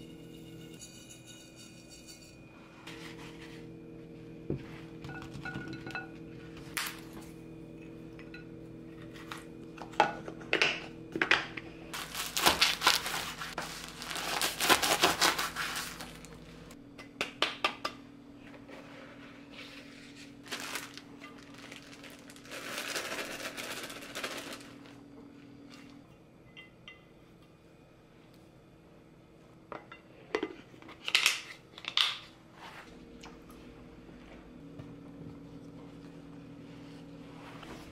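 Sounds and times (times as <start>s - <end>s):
low steady hum: 0.0s - 37.9s
plastic packaging crinkling: 12.0s - 16.5s, 20.4s - 25.0s
containers clicking and clinking: 20.5s - 25.0s.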